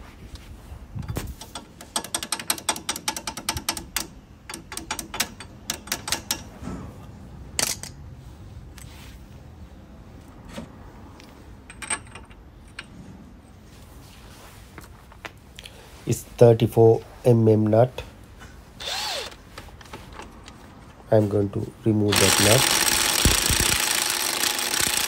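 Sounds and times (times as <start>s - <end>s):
rapid clicks of hand tool: 1.4s - 6.4s, 22.1s - 25.0s.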